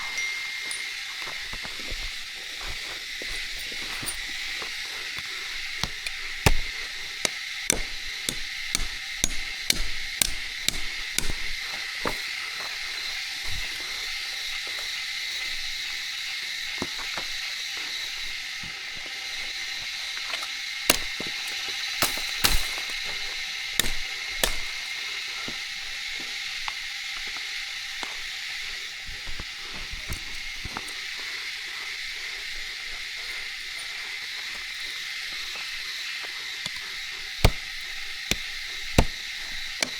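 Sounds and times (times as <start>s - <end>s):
insects droning: 0.0s - 39.9s
sharp chopping knocks: 5.8s - 11.5s, 20.9s - 21.2s, 23.8s - 24.7s, 37.4s - 37.7s, 38.3s - 39.2s.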